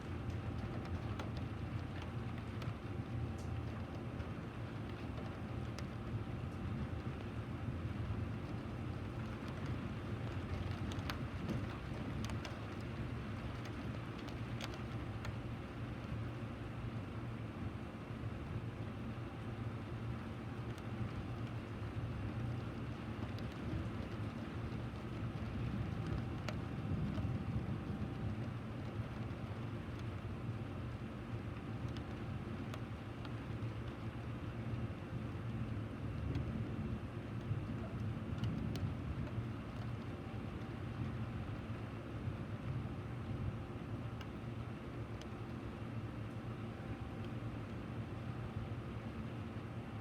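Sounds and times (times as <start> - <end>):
raindrops ticking: 0.0 - 16.4, 20.4 - 41.9
steady rain falling: 0.0 - 50.0.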